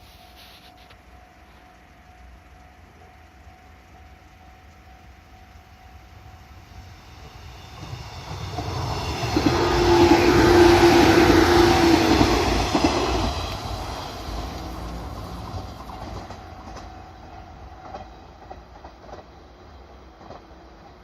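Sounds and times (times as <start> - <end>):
train passing: 0.0 - 21.0
wheels rushing on rails: 0.0 - 21.0
steady tone: 1.1 - 17.7.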